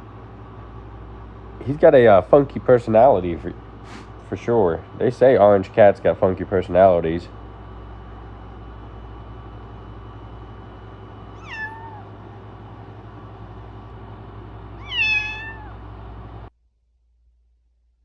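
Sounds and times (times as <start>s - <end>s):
steady low hum: 0.0s - 16.5s
kitten meowing: 11.4s - 12.1s, 14.8s - 15.8s.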